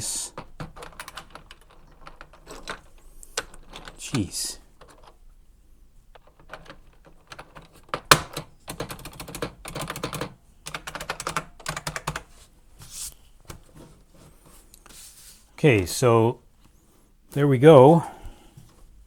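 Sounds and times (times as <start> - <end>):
keyboard keycaps clicking: 0.3 - 5.2, 6.1 - 12.3.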